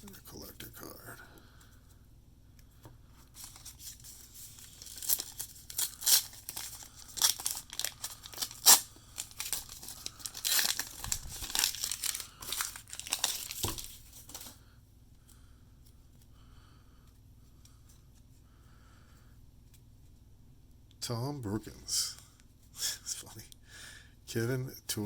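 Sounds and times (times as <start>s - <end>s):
foil wrapper tearing and crinkling: 3.4s - 14.5s.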